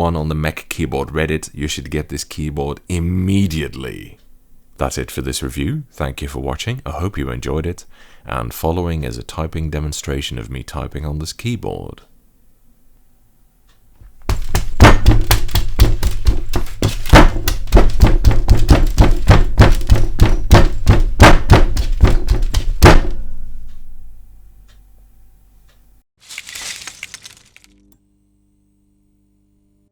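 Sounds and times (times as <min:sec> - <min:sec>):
short rustle: 0:26.2 - 0:27.7.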